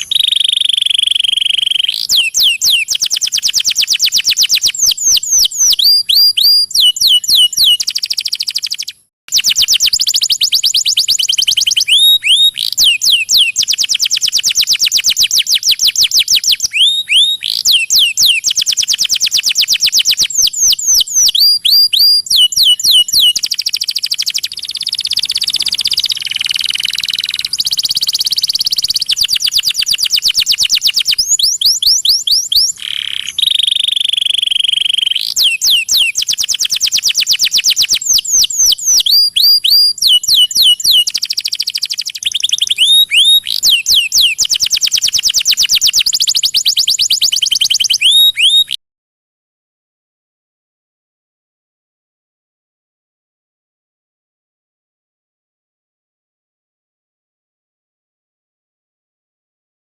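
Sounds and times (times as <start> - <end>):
songbird trilling: 0.0 - 48.8
bird buzzy chatter: 22.1 - 37.1.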